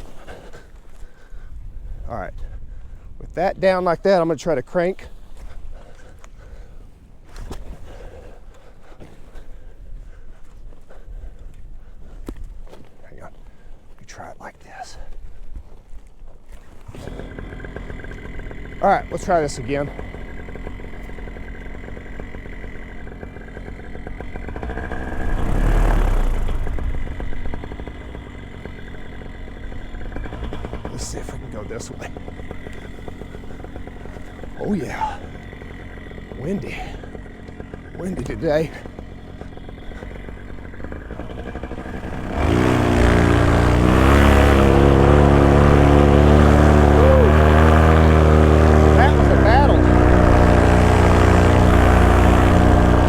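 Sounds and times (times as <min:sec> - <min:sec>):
paramotor engine running: 0:00.0 - 0:53.0
wind buffeting microphone: 0:01.3 - 0:03.3.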